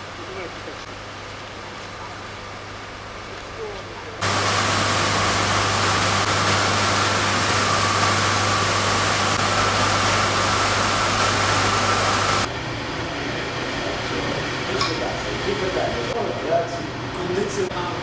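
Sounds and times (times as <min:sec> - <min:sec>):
heavy machinery humming: 0:04.1 - 0:18.0.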